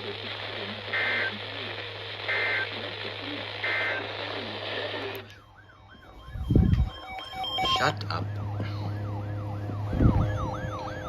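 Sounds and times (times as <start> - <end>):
radio reception hiss and hum: 0.0 - 11.0
digital data bursts: 2.2 - 5.0, 6.1 - 8.2.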